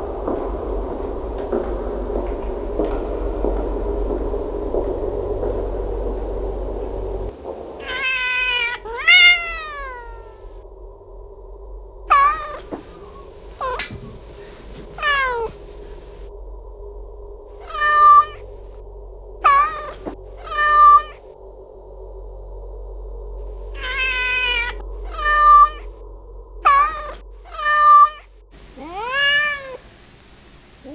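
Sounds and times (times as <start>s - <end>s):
rushing noise: 0.0s - 30.9s
cat meowing: 7.8s - 10.4s, 12.1s - 12.6s, 13.6s - 13.9s, 15.0s - 15.6s, 17.6s - 18.4s, 19.4s - 21.2s, 23.8s - 25.9s, 26.6s - 29.8s.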